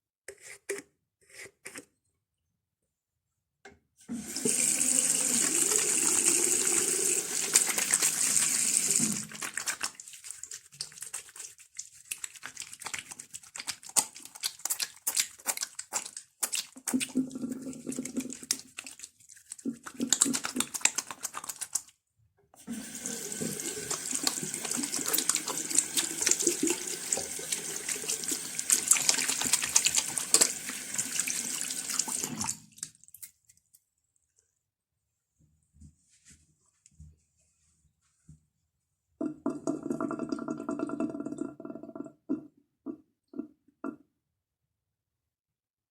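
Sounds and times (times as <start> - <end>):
sink tap running: 4.1 - 9.4, 22.6 - 32.5
hands rubbing and splashing: 4.5 - 22.0, 22.8 - 33.8.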